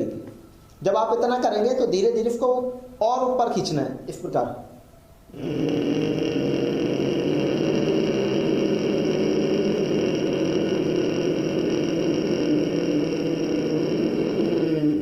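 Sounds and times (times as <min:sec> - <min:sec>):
long throaty inhalation: 0:05.3 - 0:15.0.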